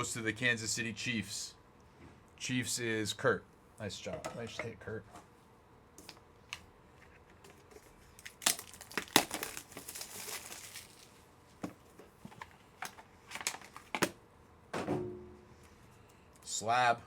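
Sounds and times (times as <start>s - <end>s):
packaging crinkling and rustling: 6.1s - 14.2s.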